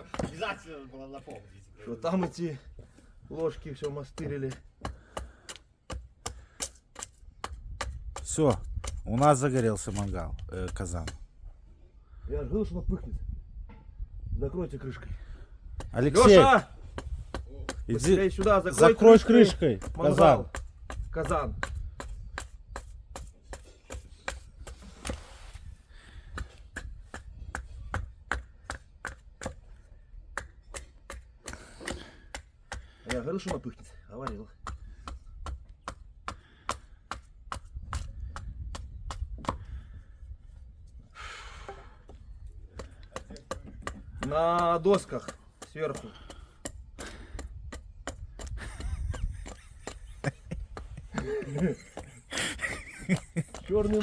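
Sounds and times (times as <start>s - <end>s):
person speaking: 16.0s - 16.7s.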